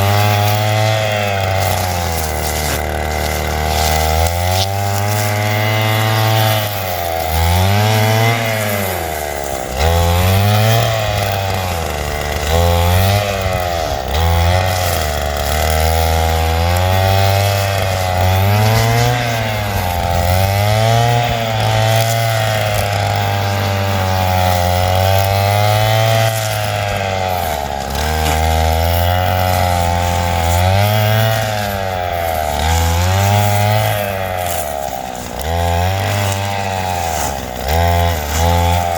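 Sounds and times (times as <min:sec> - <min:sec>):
brushcutter engine revving: 0:00.0 - 0:38.9.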